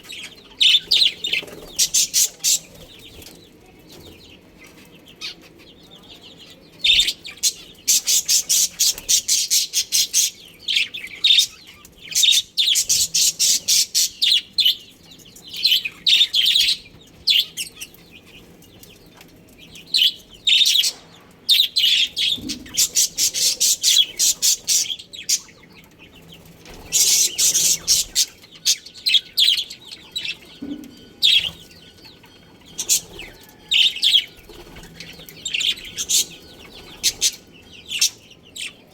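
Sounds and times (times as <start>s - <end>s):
budgerigars chattering: 0.0s - 3.2s, 6.8s - 14.9s, 19.9s - 38.9s.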